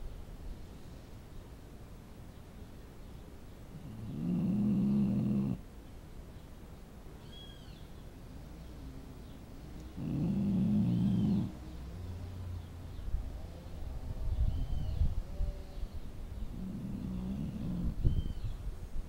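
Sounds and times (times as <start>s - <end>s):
dog snoring: 3.8s - 5.6s, 9.9s - 11.6s, 16.5s - 18.0s.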